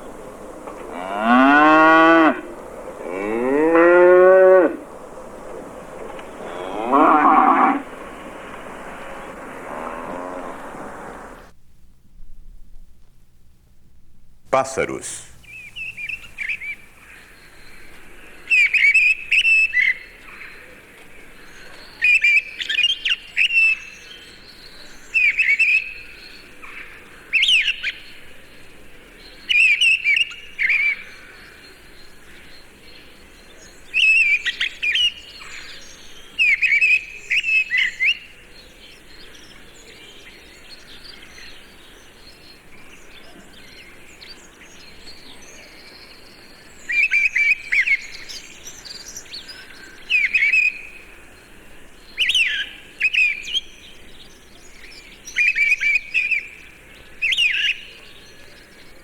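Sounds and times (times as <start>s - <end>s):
songbird chirps and trills: 0.0s - 11.5s, 14.6s - 26.5s
faint steady background noise: 0.0s - 59.0s.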